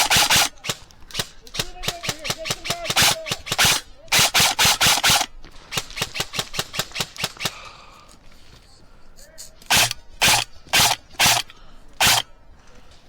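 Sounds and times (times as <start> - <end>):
airsoft guns firing: 0.0 - 7.7, 9.7 - 12.3.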